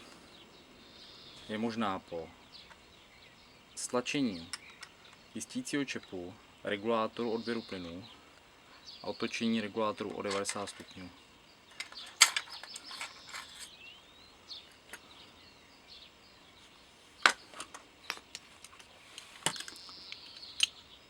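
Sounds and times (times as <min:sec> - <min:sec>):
faint bird chirps: 0:00.0 - 0:21.0
metal rifle parts clacking: 0:10.1 - 0:11.0, 0:11.7 - 0:13.7, 0:17.2 - 0:20.7.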